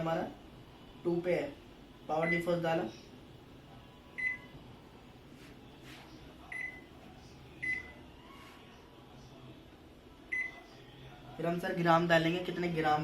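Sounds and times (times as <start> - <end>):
microwave oven beeping: 2.2 - 2.5, 4.0 - 4.6, 6.5 - 6.9, 7.6 - 8.0, 10.3 - 10.6.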